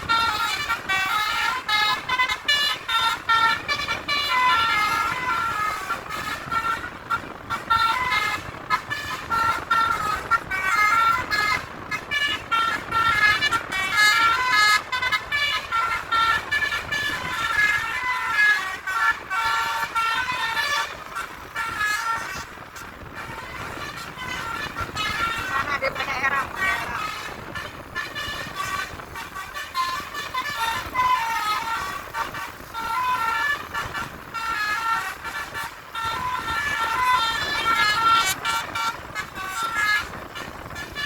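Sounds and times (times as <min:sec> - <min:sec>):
bus horns playing short tunes: 0:12.1 - 0:41.0.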